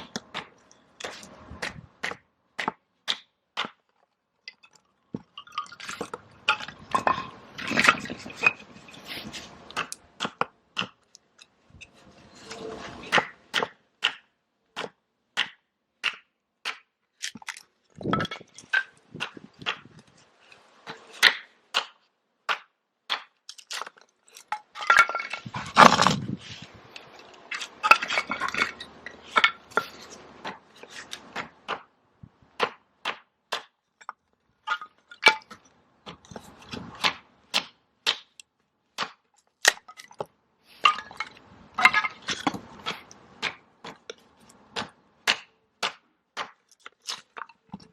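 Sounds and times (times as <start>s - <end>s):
wood cracking and splintering: 23.5s - 26.4s.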